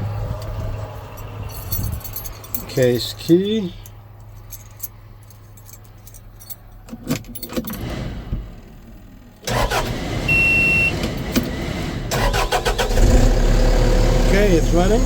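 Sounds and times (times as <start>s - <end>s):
diesel engine starting and running: 0.0s - 5.5s, 6.7s - 15.0s
keys jangling: 1.1s - 7.8s
short high beep: 10.3s - 11.0s.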